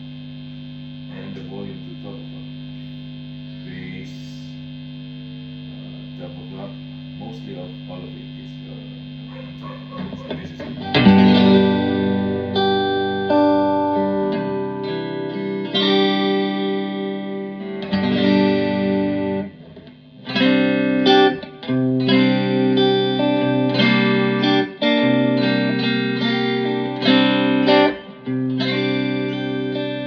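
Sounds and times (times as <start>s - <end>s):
clean electric guitar chords: 5.5s - 30.0s.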